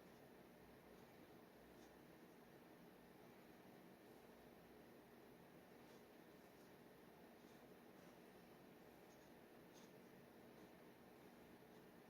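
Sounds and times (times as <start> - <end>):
low hiss: 0.0 - 12.0
dip pen scratching on paper: 0.9 - 2.5, 5.8 - 12.0.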